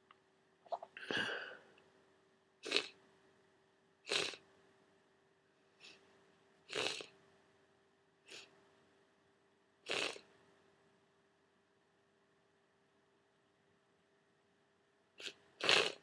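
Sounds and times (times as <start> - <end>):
person sniffling: 0.8 - 1.7.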